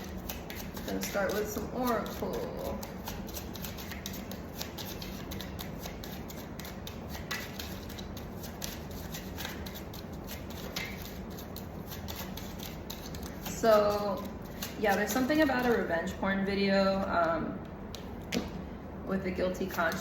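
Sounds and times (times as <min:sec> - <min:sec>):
cards being shuffled: 0:00.1 - 0:15.8.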